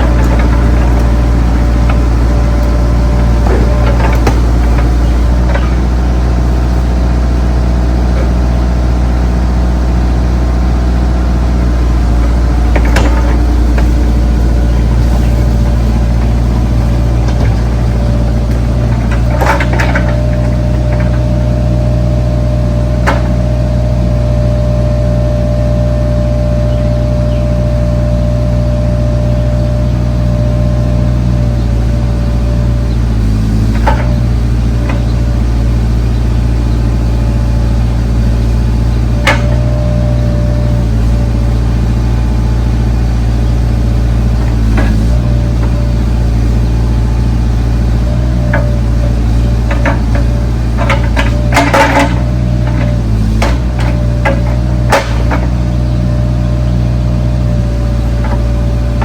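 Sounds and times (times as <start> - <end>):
excavator diesel engine running: 0.0 - 59.0
steady whine: 0.0 - 59.0
metallic knocks: 12.0 - 21.5, 39.2 - 39.8.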